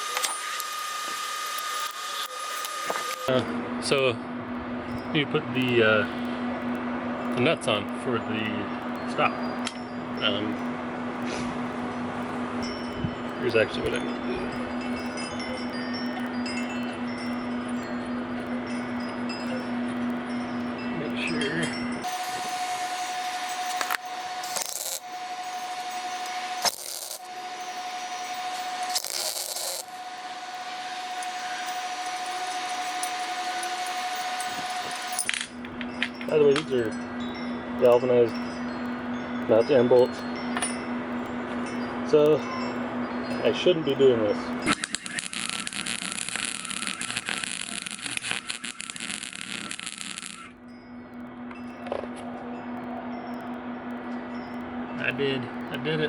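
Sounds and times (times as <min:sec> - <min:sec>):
welder arc crackling: 0:00.0 - 0:03.3, 0:22.0 - 0:35.5, 0:44.6 - 0:50.6
steady low hum: 0:03.2 - 0:56.0
steady tone: 0:14.0 - 0:35.2, 0:44.5 - 0:56.0.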